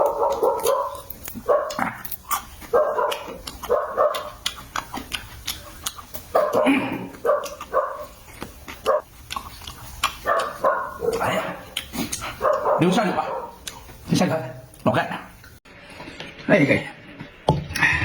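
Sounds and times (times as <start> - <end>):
dog barking: 0.0 - 2.0, 2.6 - 4.5, 6.3 - 8.2, 8.8 - 9.1, 10.2 - 13.6.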